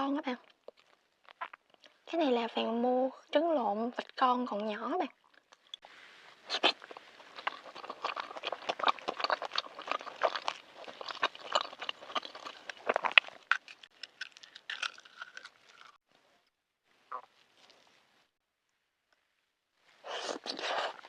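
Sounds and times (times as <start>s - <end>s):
wet chewing and lip-smacking: 0.4s - 2.0s, 5.2s - 5.8s, 6.5s - 16.0s.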